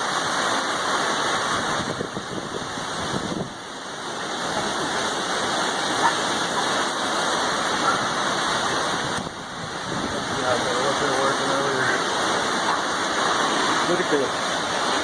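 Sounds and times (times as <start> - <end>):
heavy rain: 0.0 - 15.0
thunderstorm winds: 1.3 - 10.8.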